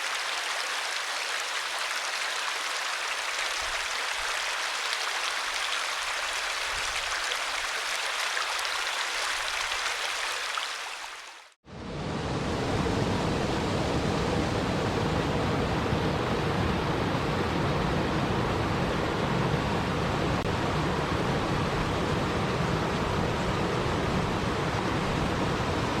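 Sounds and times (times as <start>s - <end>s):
river water rushing: 0.0s - 11.6s.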